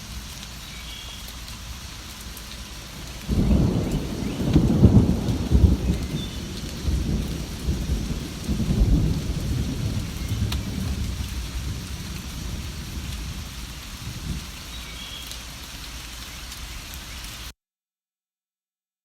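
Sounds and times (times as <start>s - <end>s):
steady rain: 0.0s - 17.5s
thunder rumbling: 2.8s - 14.6s.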